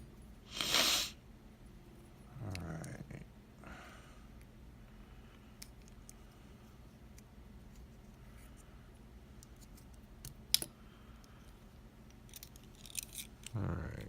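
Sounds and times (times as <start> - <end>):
clicks and scrapes from lock tools: 12.2 - 13.6.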